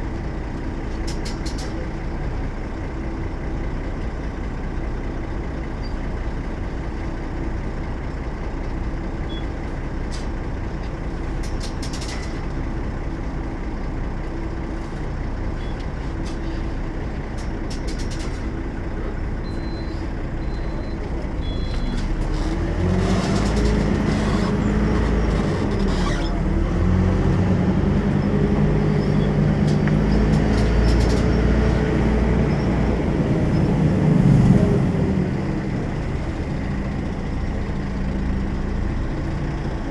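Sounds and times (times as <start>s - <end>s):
bus diesel engine running: 0.0s - 39.9s
short high beeps: 19.5s - 22.0s.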